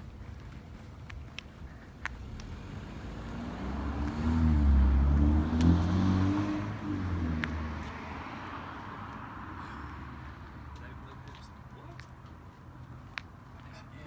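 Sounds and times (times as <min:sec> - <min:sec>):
vehicle driving past: 0:02.2 - 0:10.8.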